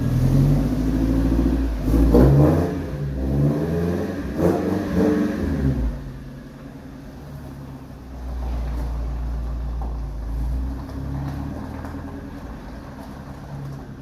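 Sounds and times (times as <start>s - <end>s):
pickup truck engine rumbling: 0.0s - 14.0s.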